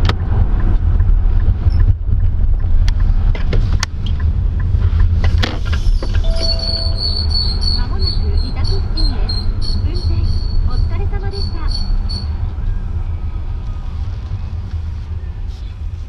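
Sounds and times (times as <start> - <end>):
road rumble: 0.0 - 16.0
high-pitched pulsing chirp: 6.3 - 9.4.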